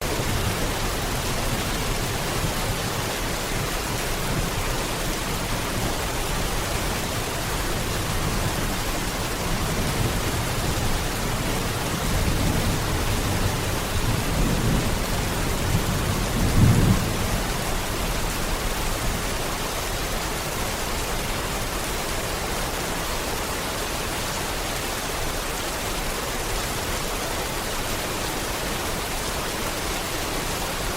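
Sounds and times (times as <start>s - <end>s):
heavy rain hissing: 0.0s - 30.9s
rumble of thunder: 9.8s - 17.9s.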